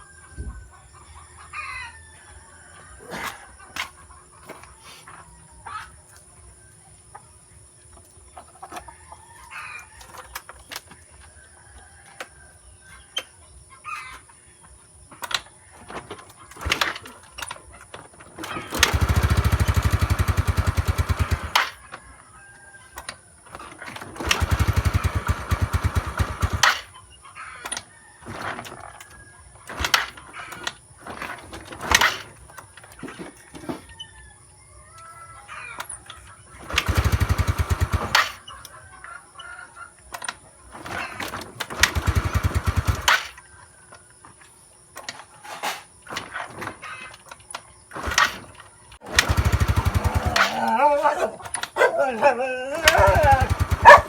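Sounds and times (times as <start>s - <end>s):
rooster crowing and clucking: 0.0s - 54.0s
scooter engine cranking: 15.2s - 22.0s, 23.0s - 28.8s, 29.7s - 33.3s, 35.8s - 38.8s, 40.1s - 43.4s, 45.0s - 54.0s.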